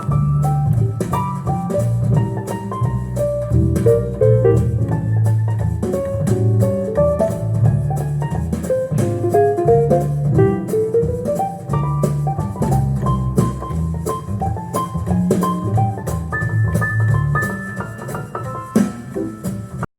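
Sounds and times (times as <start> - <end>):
instrumental music with drum beat: 0.0 - 19.9.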